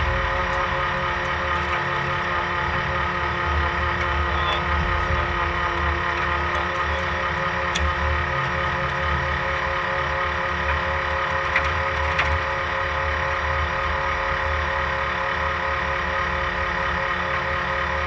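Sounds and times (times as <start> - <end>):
race car engine running: 0.0 - 18.0.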